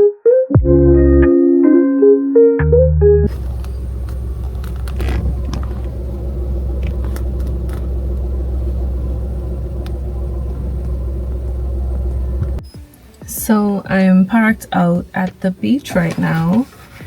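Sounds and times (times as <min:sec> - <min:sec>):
car interior rumble: 0:03.3 - 0:12.6.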